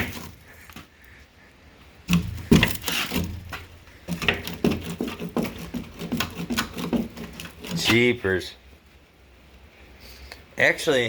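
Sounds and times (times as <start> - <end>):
heavy footsteps on steps: 2.1 - 7.9.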